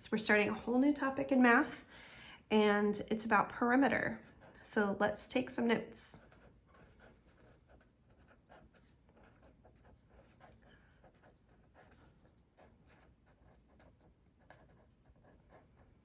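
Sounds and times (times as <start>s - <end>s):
pen scratching handwriting: 6.2s - 16.0s.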